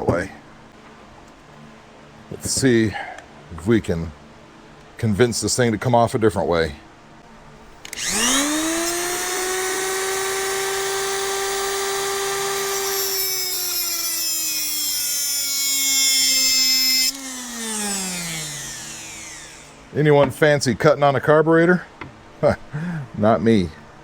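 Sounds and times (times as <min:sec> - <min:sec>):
small power tool whining: 0:07.8 - 0:20.0.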